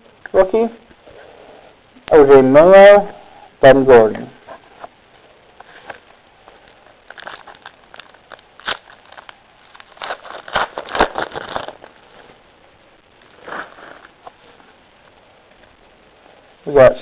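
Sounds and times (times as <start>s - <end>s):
foil wrapper crinkling and tearing: 5.6s - 12.4s, 13.2s - 14.6s.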